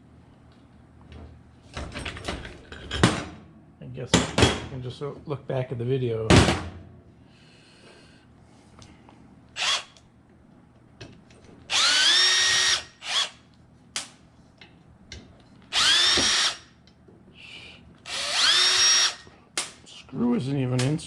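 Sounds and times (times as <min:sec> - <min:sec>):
power drill whining: 0:09.6 - 0:10.0, 0:11.7 - 0:13.4, 0:15.7 - 0:16.7, 0:18.1 - 0:19.3.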